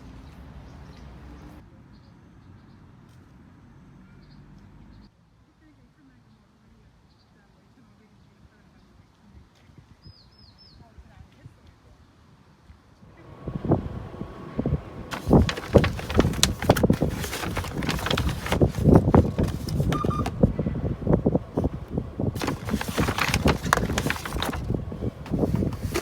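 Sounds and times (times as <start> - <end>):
objects clattering and rustling: 15.1 - 20.5, 22.4 - 26.0.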